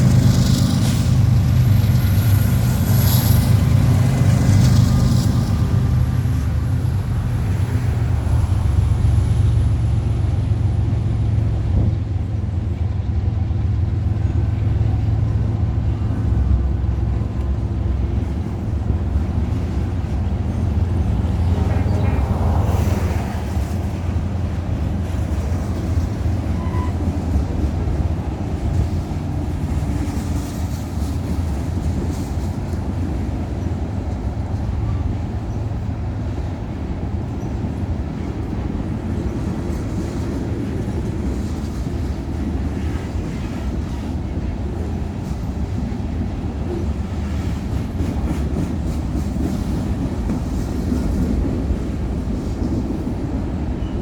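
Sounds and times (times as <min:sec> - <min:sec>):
freight train rumbling past: 0:00.0 - 0:54.0.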